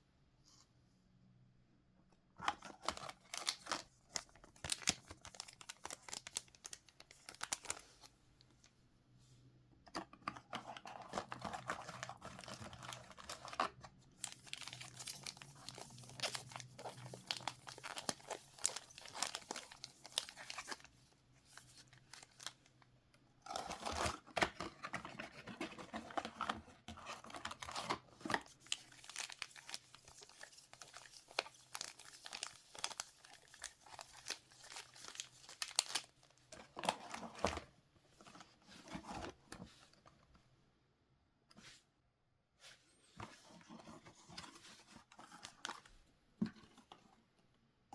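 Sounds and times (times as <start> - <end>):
plastic wrappers crinkling and tearing: 2.4 - 8.1, 10.5 - 20.9, 27.0 - 37.5.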